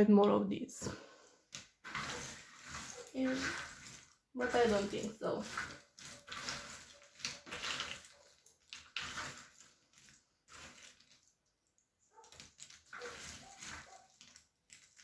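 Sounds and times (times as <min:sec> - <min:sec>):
puzzle pieces rustling and clicking: 0:12.3 - 0:15.0.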